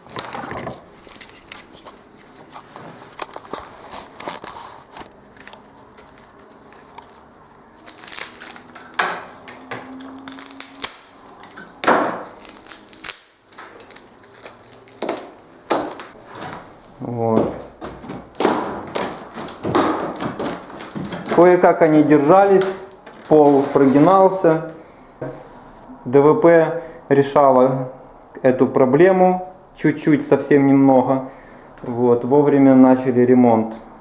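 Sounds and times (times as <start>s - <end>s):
wooden floorboards knocking and crackling: 8.9s - 10.0s, 14.9s - 24.2s.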